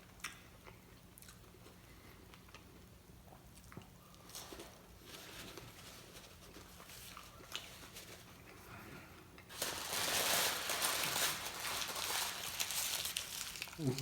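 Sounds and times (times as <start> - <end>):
paper wrapper crinkling: 9.5 - 14.0.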